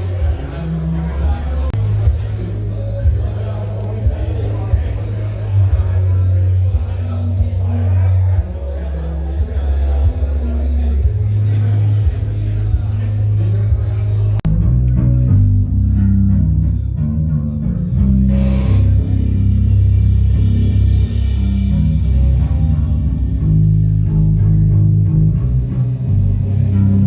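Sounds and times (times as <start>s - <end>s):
bass guitar and guitar music: 0.0s - 27.0s.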